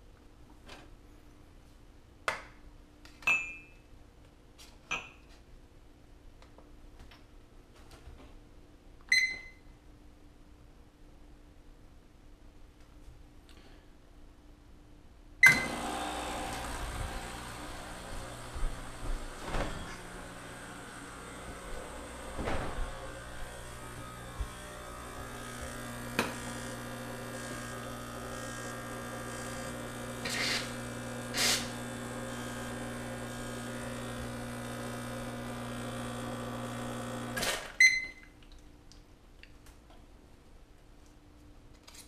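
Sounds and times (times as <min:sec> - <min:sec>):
electric appliance humming: 0:15.4 - 0:37.8.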